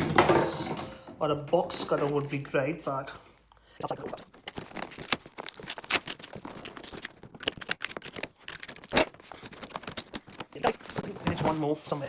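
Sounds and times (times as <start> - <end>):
packaging crinkling: 4.0 - 11.3
packing tape tearing: 4.3 - 11.1.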